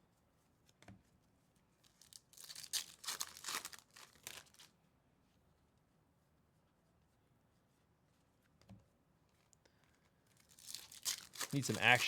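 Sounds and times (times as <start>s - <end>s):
card pack wrapper tearing: 2.1s - 4.7s, 10.5s - 12.0s.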